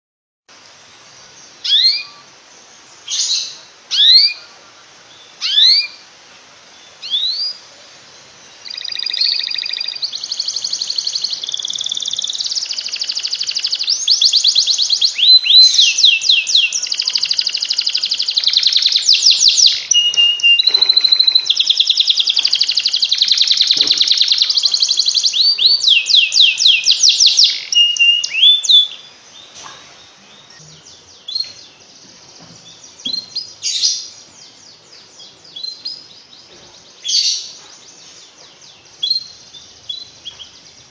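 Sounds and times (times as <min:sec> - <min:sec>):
canary singing trills: 0:01.2 - 0:06.1, 0:06.7 - 0:40.9
short bird chirps: 0:08.6 - 0:14.6, 0:15.2 - 0:29.0.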